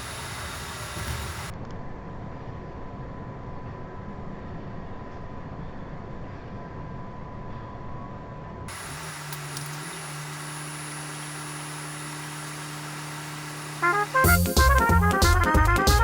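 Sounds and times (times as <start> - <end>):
bus engine drone: 0.0 - 1.5, 8.7 - 14.3
faint high whine: 0.0 - 1.5, 8.7 - 14.3.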